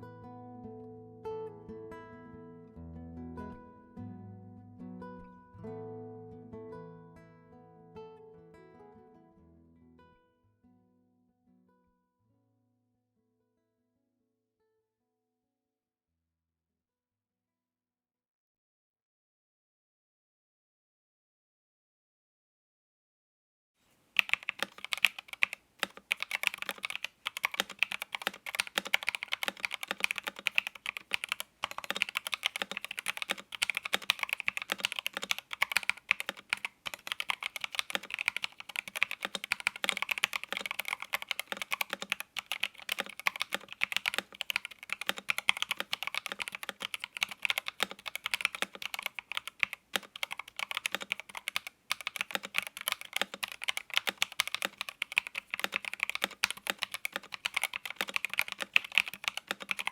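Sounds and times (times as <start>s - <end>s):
fast typing on mechanical keyboard: 24.2s - 59.9s.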